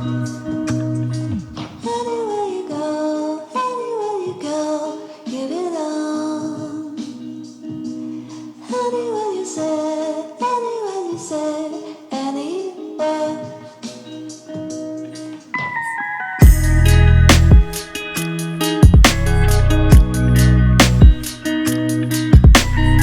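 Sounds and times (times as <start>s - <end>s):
held accompaniment tones: 15.5s - 23.0s.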